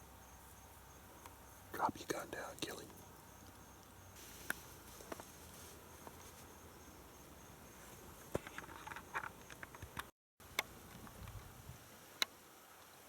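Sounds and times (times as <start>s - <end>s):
insects trilling: 0.0s - 10.0s
soft clicks and rustles: 2.6s - 6.5s.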